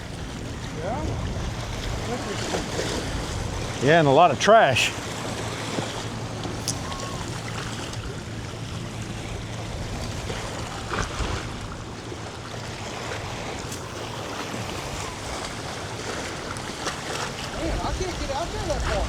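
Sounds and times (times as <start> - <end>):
wind blowing across microphone: 0.0 - 3.8, 17.4 - 19.0
small waves lapping: 0.0 - 19.0.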